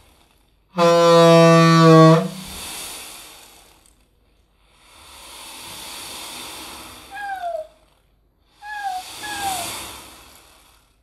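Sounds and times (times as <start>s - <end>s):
breath blown out hissing: 0.8s - 3.7s, 4.8s - 7.8s, 8.6s - 10.8s
short falling whistles: 8.6s - 9.8s.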